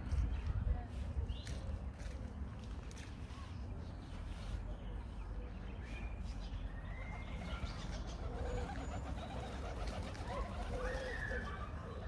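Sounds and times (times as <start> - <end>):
birds calling: 2.9 - 12.0
pigeon cooing: 7.0 - 12.0.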